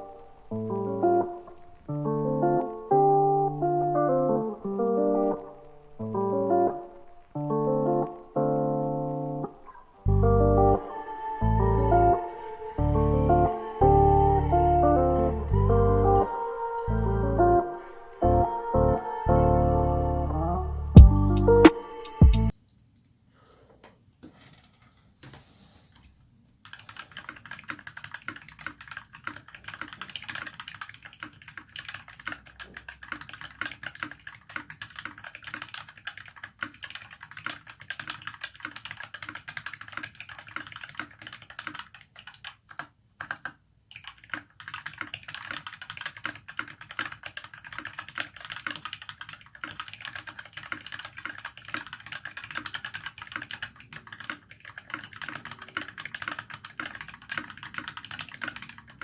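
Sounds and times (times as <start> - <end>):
fast typing on mechanical keyboard: 26.6 - 59.0.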